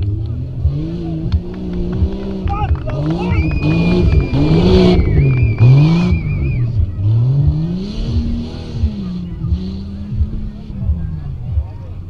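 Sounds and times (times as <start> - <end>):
car engine revving hard: 0.0 - 11.7
thin high whistle-like tone: 3.2 - 6.8.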